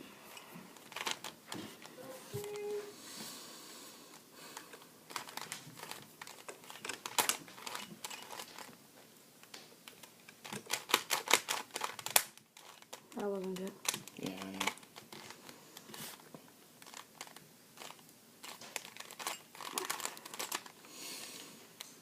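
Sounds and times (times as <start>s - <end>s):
rustling: 0.0s - 22.0s
rubik's cube clicking: 0.8s - 1.3s, 4.6s - 8.7s, 9.5s - 16.2s, 16.8s - 20.8s.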